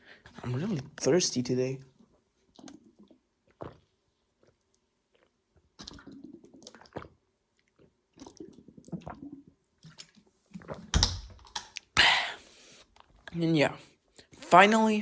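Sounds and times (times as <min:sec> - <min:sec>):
person gulping and swallowing: 0:02.5 - 0:12.0.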